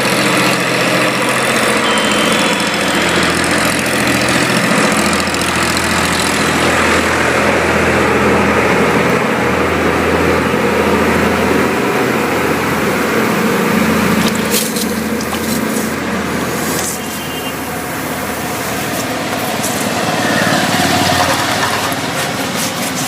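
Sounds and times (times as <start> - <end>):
motor humming: 0.1 - 7.2.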